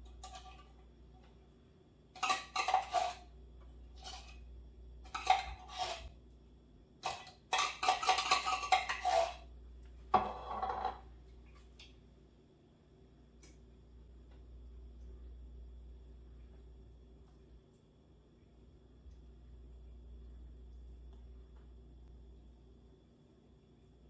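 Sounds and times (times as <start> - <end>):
spoon scraping casserole dish: 0.0 - 1.0, 2.2 - 6.2, 7.0 - 9.5.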